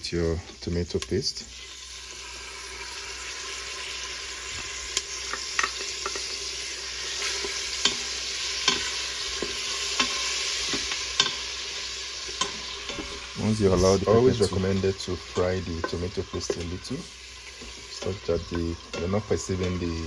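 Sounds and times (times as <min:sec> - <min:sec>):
paste frying in oil sizzling: 0:00.0 - 0:20.0
utensil scraping pot: 0:03.4 - 0:20.0.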